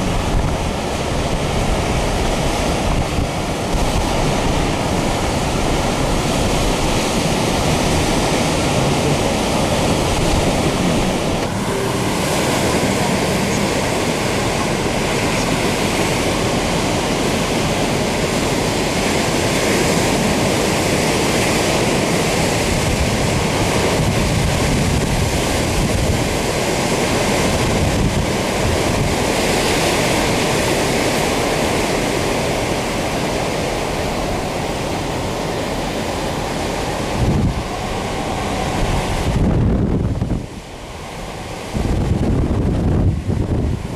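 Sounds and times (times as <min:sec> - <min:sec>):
large waves crashing: 0:00.0 - 0:43.9.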